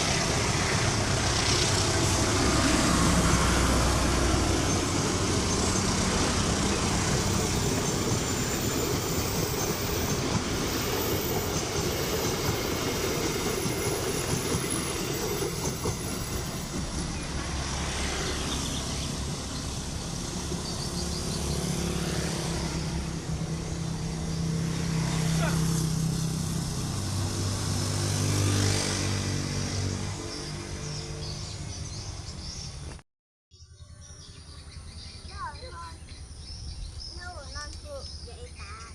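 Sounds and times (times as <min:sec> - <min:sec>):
train wheels rolling on rails: 0:00.0 - 0:25.2
locomotive engine drone: 0:00.0 - 0:32.4.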